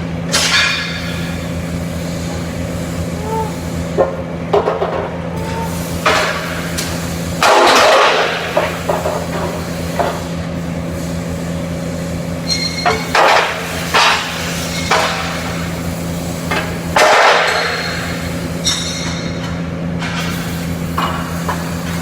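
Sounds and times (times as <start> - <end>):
steady machine hum: 0.0 - 14.6.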